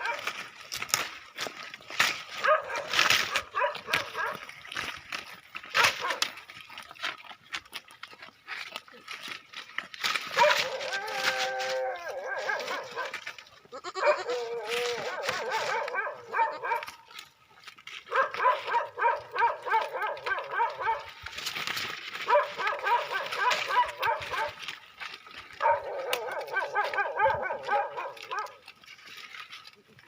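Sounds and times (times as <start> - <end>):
goats bleating: 13.7 - 15.6.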